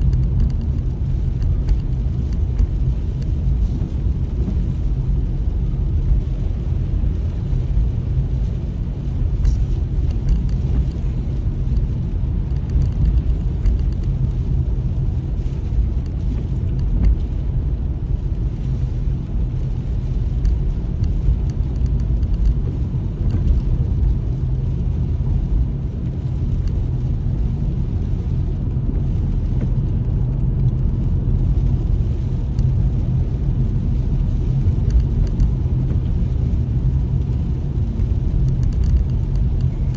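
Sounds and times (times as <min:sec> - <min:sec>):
faint ticks: 0:00.0 - 0:03.8, 0:09.4 - 0:11.0, 0:12.5 - 0:14.4, 0:19.9 - 0:23.8, 0:34.0 - 0:36.1, 0:37.8 - 0:39.7
car engine and tyre rumble: 0:00.0 - 0:39.9.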